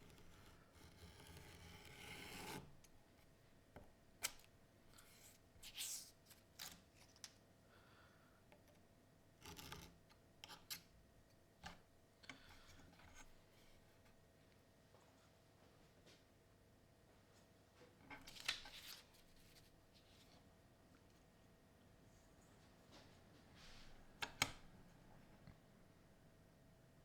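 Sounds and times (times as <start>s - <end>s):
knife cutting paper along ruler: 0.1s - 2.7s.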